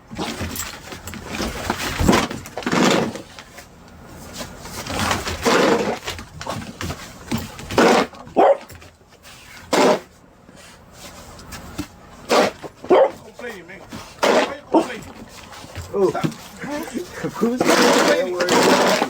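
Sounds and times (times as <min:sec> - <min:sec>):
dog barking and whining: 0:07.7 - 0:08.7, 0:12.3 - 0:13.3, 0:14.2 - 0:15.0.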